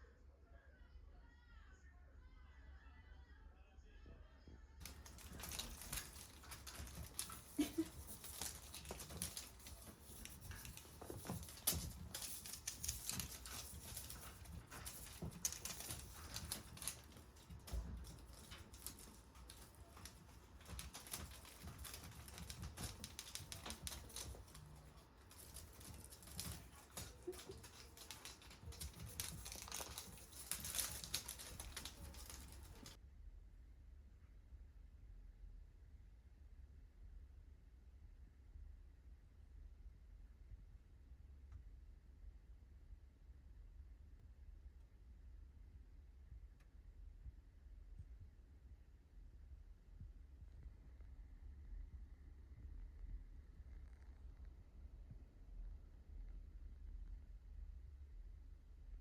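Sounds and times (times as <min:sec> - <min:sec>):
kittens scratching and rustling: 0:04.8 - 0:33.0.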